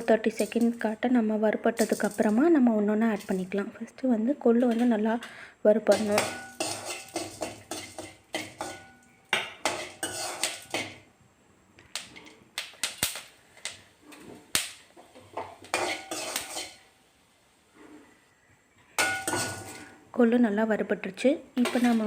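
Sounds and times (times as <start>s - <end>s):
spoon scraping and clinking on pan: 0.0s - 0.9s, 1.7s - 2.5s, 4.6s - 11.1s, 15.2s - 16.9s, 18.9s - 20.0s, 21.6s - 22.0s.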